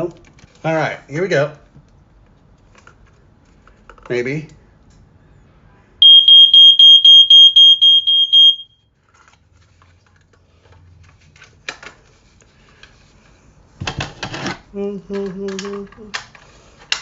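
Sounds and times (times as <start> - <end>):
smoke alarm fast-pulsing beep: 6.0 - 8.8.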